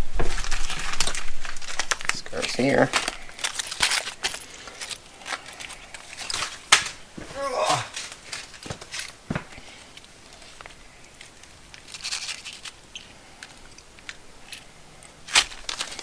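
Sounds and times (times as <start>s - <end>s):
plastic packaging crinkling: 0.0s - 13.7s, 15.2s - 16.0s.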